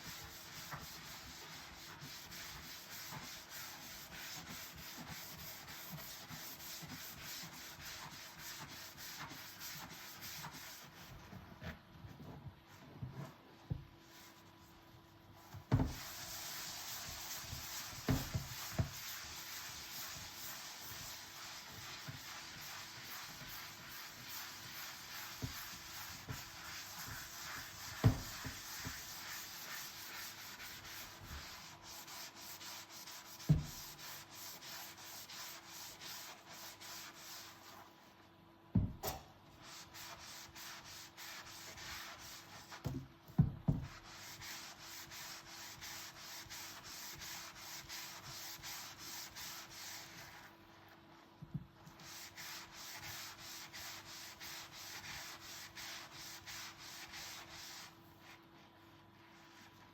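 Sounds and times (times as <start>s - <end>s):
dishes being scrubbed: 15.8s - 37.8s.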